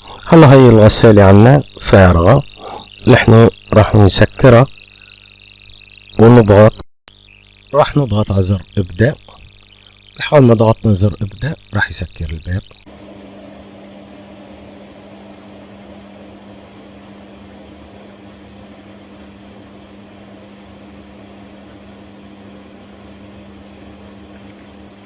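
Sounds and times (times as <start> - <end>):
washing machine hum: 10.2 - 25.0.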